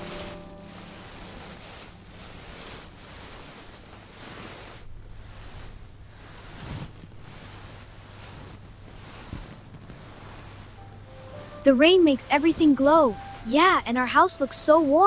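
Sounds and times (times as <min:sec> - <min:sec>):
rain hissing: 0:00.0 - 0:15.0.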